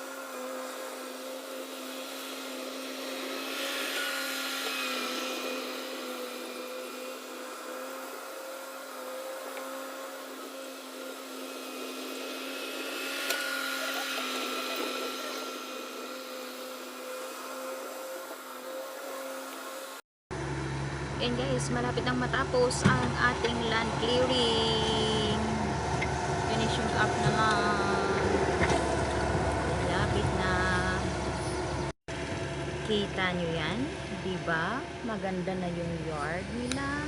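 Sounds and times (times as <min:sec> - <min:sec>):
skid steer whining drone: 0:00.0 - 0:37.0.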